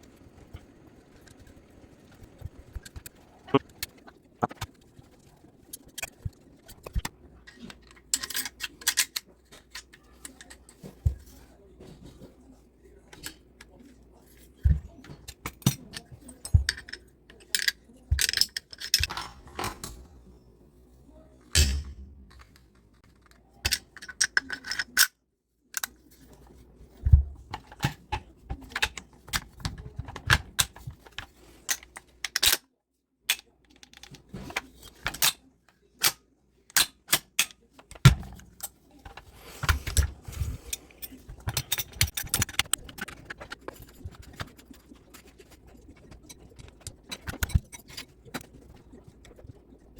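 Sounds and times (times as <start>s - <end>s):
rifle parts clicking and clattering: 3.8s - 12.3s, 13.0s - 20.0s, 21.5s - 32.7s, 33.3s - 49.9s.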